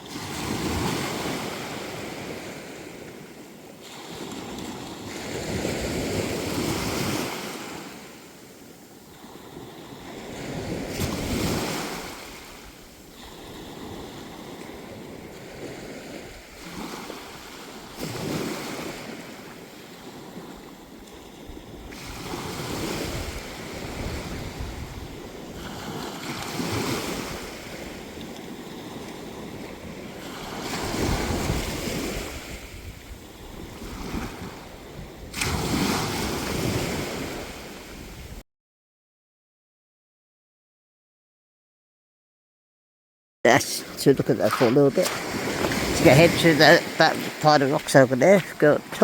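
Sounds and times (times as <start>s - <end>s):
sea waves breaking on beach: 0.0s - 38.4s, 43.5s - 49.0s
wind buffeting microphone: 20.0s - 38.4s.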